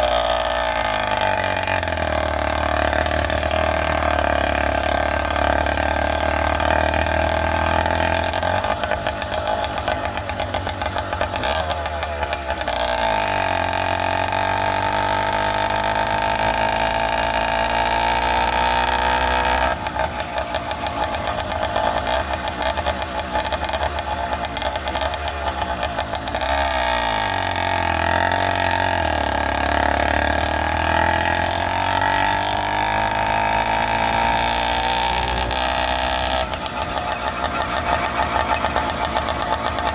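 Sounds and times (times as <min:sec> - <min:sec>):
motorized bike engine running: 0:00.0 - 0:39.9.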